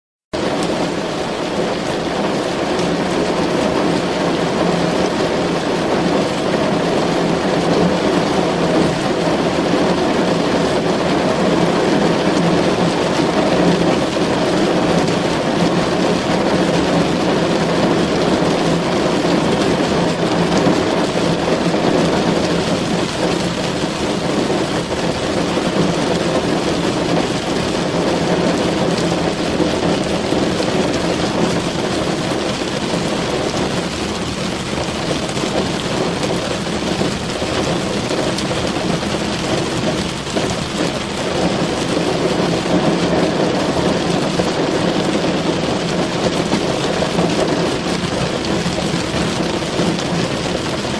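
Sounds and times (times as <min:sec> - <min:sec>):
heavy rain on a car roof: 0:00.3 - 0:50.9.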